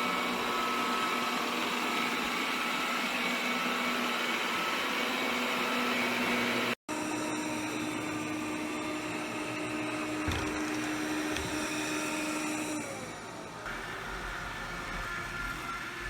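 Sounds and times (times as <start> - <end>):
robot vacuum motor hum: 8.8 - 13.0.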